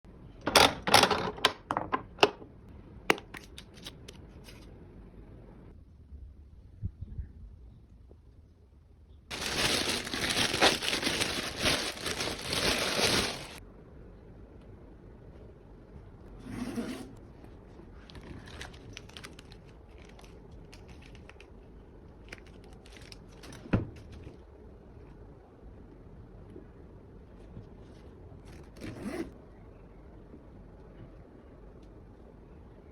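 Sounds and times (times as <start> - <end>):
packaging rustling and clicking: 9.3 - 13.6, 18.1 - 21.5, 22.2 - 24.3.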